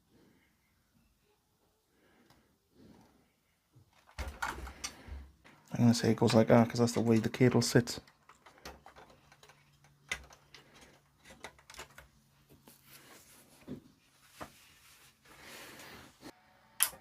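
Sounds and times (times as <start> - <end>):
wire connectors clicking and knocking: 3.8 - 12.6.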